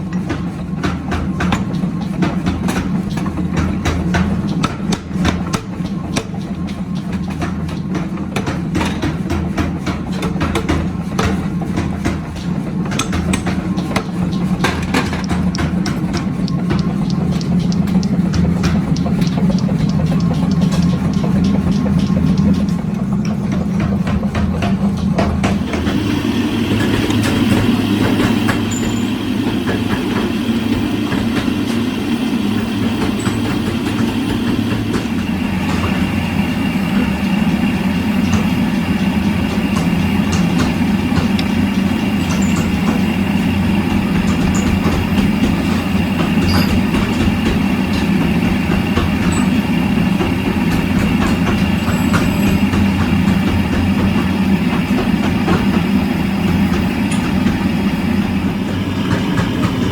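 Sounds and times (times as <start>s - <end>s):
factory machinery drone: 0.0s - 59.9s
faint clicks: 15.1s - 22.9s
thin high whine: 25.8s - 38.8s.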